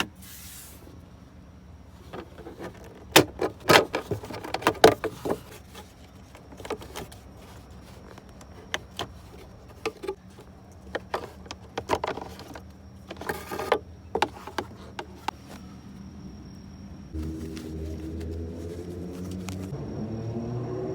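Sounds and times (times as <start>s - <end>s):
scraping rustle: 2.0s - 15.6s.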